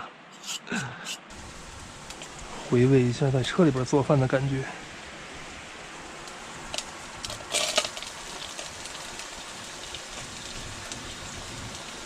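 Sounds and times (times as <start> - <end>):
food sizzling in a frying pan: 4.8 - 12.0.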